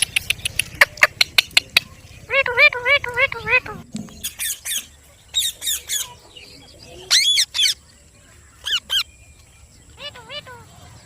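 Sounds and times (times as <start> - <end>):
parrot calling: 7.1 - 7.8, 8.6 - 9.1, 10.0 - 10.8.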